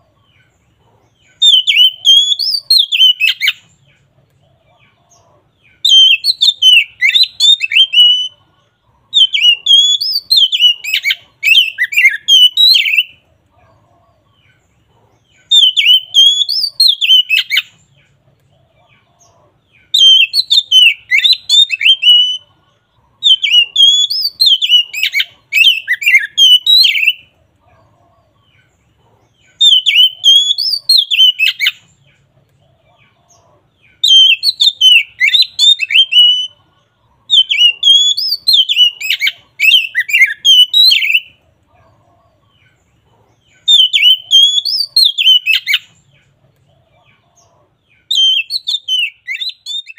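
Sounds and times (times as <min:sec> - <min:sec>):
bird singing whistled phrases: 0:01.4 - 0:03.6, 0:05.8 - 0:08.4, 0:09.2 - 0:13.1, 0:15.5 - 0:17.8, 0:19.9 - 0:22.4, 0:23.2 - 0:27.3, 0:29.6 - 0:31.8, 0:34.0 - 0:36.6, 0:37.3 - 0:41.4, 0:43.6 - 0:45.9, 0:48.1 - 0:49.9.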